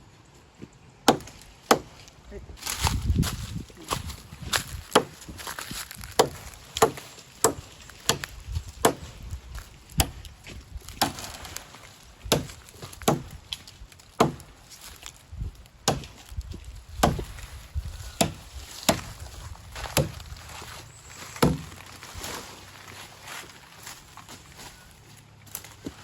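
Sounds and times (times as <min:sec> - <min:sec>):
chopping strikes: 0:01.0 - 0:02.0, 0:04.9 - 0:05.3, 0:06.0 - 0:09.1, 0:10.0 - 0:10.3, 0:10.9 - 0:11.7, 0:12.3 - 0:13.4, 0:14.2 - 0:14.6, 0:15.8 - 0:16.3, 0:17.0 - 0:17.4, 0:18.2 - 0:19.2, 0:19.8 - 0:20.2, 0:21.4 - 0:21.8.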